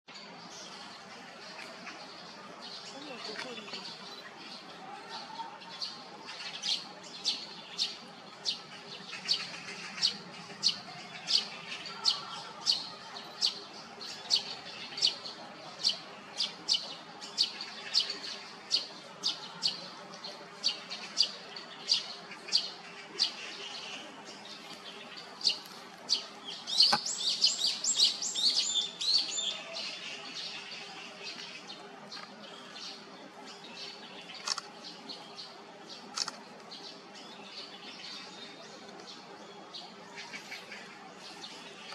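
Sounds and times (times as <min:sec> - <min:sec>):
rapid chattering bird calls: 0:06.3 - 0:12.8
woodpeckers calling: 0:25.4 - 0:29.2.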